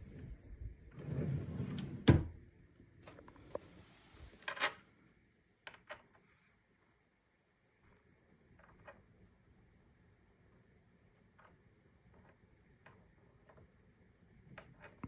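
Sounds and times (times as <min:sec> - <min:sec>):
drawer sliding: 0:00.9 - 0:02.3
drawer shutting with a knock: 0:01.7 - 0:02.4.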